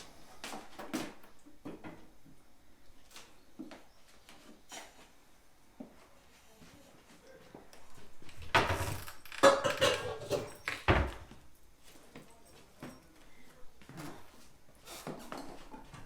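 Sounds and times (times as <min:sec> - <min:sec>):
kitchenware clattering: 0:08.4 - 0:11.3.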